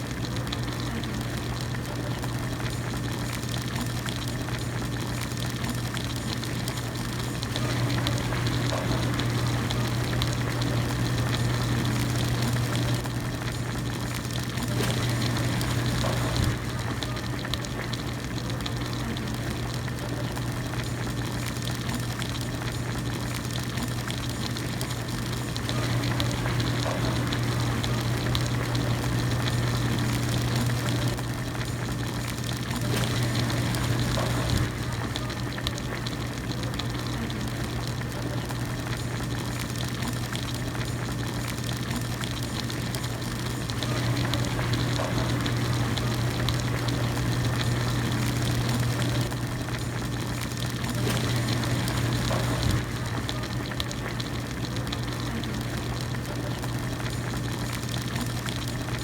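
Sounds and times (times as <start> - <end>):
broth boiling in a pot: 0.0 - 59.0.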